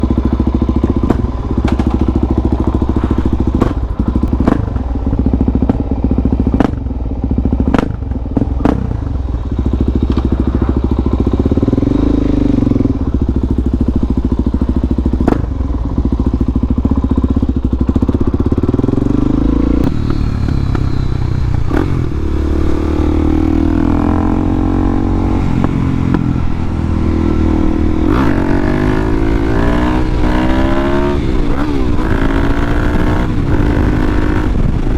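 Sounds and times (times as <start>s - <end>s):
motorcycle engine running: 0.0s - 34.9s
motorcycle revving through gears: 0.0s - 34.9s
sharp clicks and knocks: 0.8s - 2.3s, 2.9s - 4.9s.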